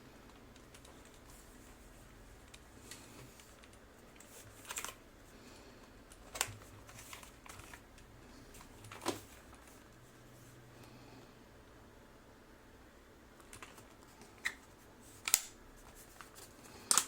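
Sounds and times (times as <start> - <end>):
mechanical keyboard keystrokes: 13.4 - 14.0.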